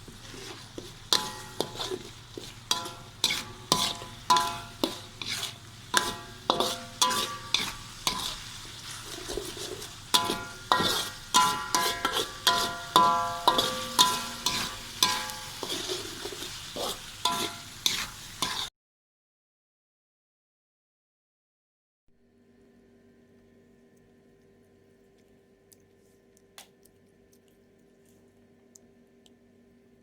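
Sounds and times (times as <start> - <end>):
shallots sizzling in oil: 0.0 - 18.7
metal spatula knocking pan: 1.1 - 2.0, 2.7 - 5.1, 5.9 - 8.3, 10.2 - 15.6.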